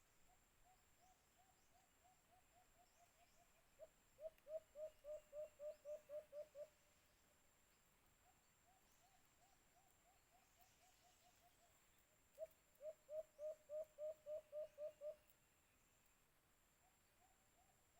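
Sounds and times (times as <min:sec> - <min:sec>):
dove low hooting: 0:00.6 - 0:06.8, 0:12.4 - 0:15.3.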